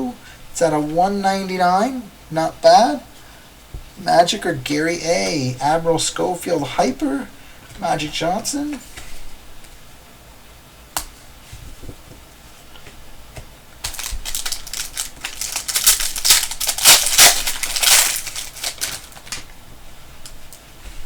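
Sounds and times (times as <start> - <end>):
plastic wrapper crinkling: 13.8 - 19.5.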